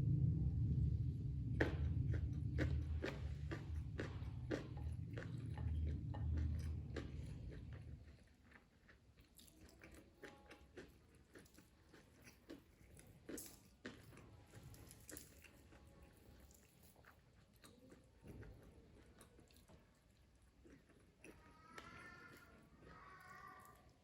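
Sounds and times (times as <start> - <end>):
low rumble: 0.0 - 8.4
crunchy chewing: 1.5 - 24.0.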